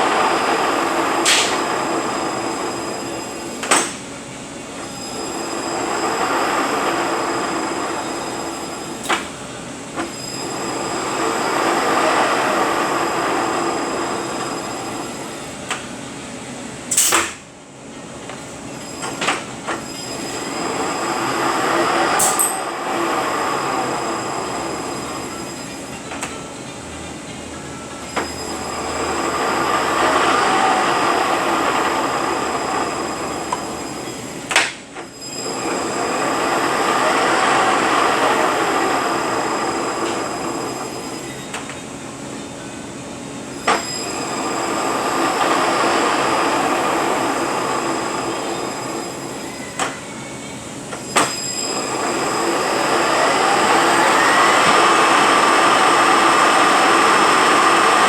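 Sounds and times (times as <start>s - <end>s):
truck transmission gears whining: 18.2s - 58.0s.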